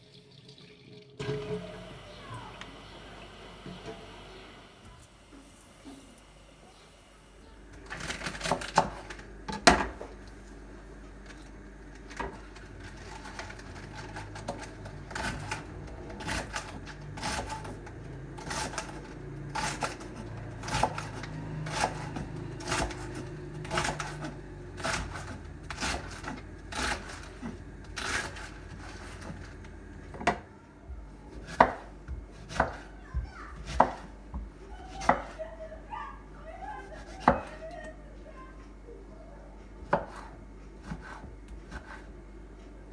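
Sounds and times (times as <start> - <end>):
knife chopping on cutting board: 19.6 - 29.4, 31.3 - 32.9, 33.5 - 35.4, 37.0 - 37.5, 39.8 - 42.1.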